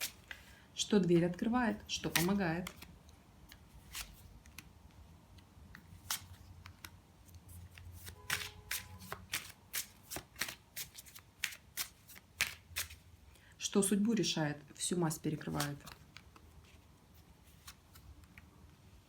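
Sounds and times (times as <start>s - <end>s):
cards being shuffled: 0.0s - 0.6s, 2.0s - 4.7s, 5.7s - 13.0s, 15.3s - 18.4s.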